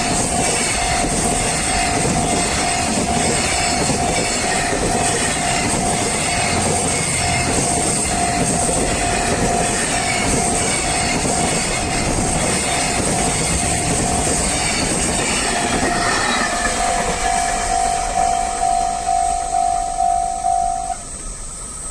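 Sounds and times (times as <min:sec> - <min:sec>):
freight train wheels clattering: 0:00.0 - 0:20.1
level crossing bell ringing: 0:00.2 - 0:10.7, 0:13.5 - 0:14.6, 0:15.4 - 0:21.0.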